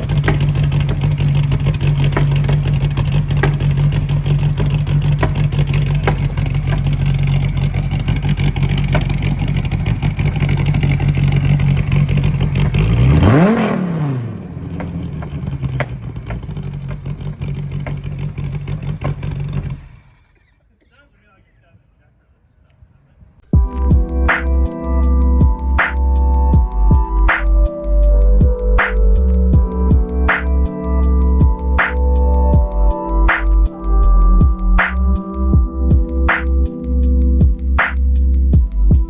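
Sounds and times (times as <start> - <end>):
car engine running and revving: 0.0 - 20.6.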